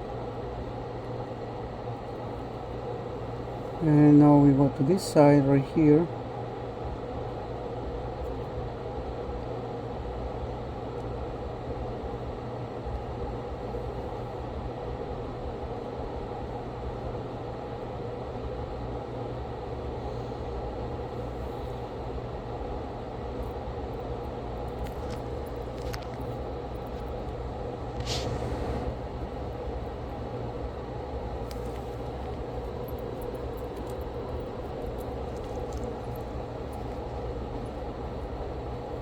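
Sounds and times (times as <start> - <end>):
fan whirring and humming: 0.0 - 39.0.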